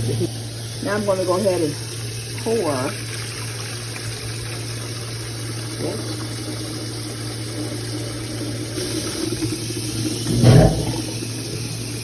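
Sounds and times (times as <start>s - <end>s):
tea pouring into pitcher: 0.0s - 12.0s
thud: 10.3s - 11.1s.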